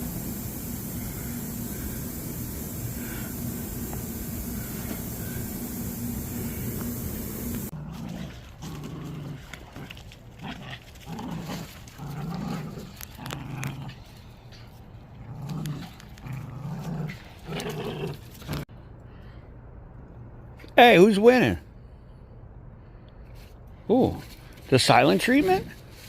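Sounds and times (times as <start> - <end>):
dogs growling in play: 0.0 - 18.7.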